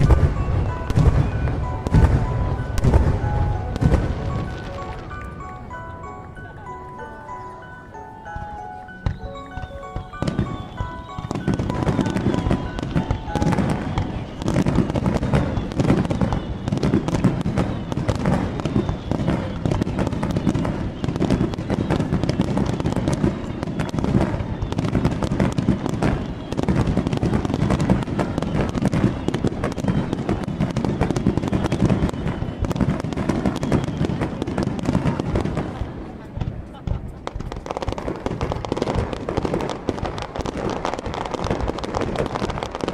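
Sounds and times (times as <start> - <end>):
faint chime-like music: 0.0 - 37.7
fireworks bangs and crackles: 0.0 - 42.9.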